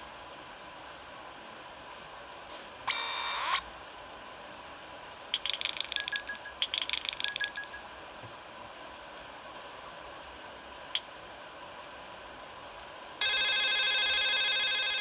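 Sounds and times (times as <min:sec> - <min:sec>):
phone ringtone trilling beeps: 0:02.9 - 0:03.6, 0:05.4 - 0:07.9, 0:13.2 - 0:15.0.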